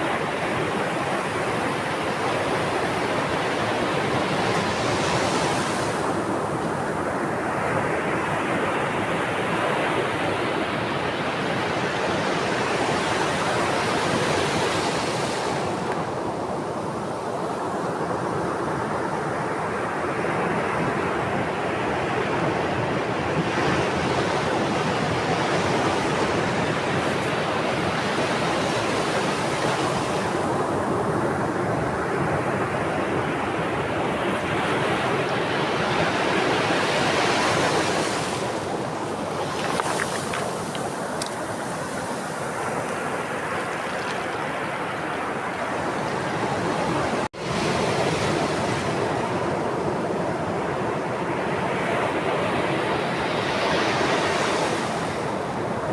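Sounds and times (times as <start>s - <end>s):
sea waves breaking on shore: 19.4s - 55.9s.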